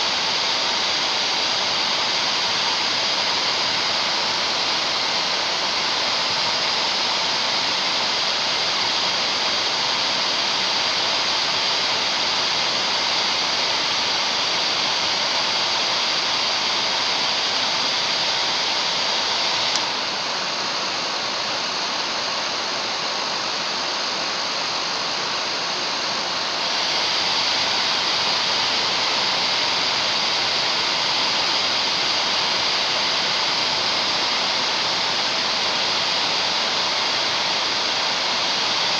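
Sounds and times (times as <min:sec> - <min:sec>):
hair dryer blowing: 0:00.0 - 0:38.9
hair dryer switch click: 0:19.5 - 0:20.0.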